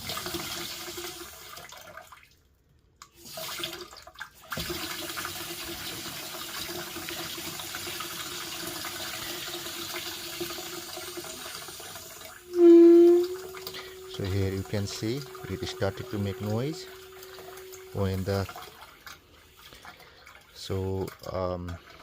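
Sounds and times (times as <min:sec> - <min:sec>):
water rushing into tank: 0:00.0 - 0:02.4, 0:03.1 - 0:22.0
valve humming: 0:12.4 - 0:19.2.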